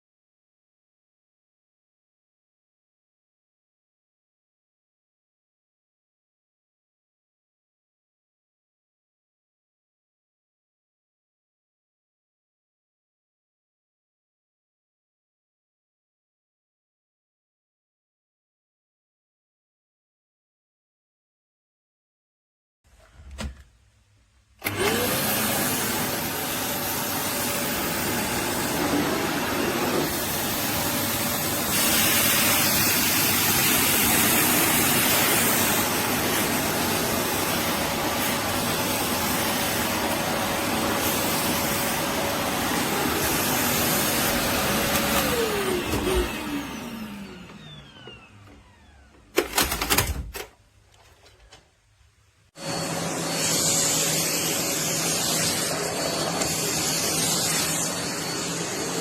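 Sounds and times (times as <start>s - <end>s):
vacuum cleaner running: 24.6s - 50.1s, 52.6s - 59.0s.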